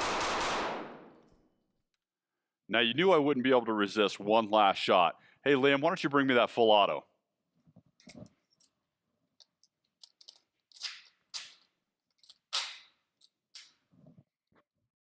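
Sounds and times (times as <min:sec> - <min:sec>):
gunshots cracking: 0:00.0 - 0:01.2.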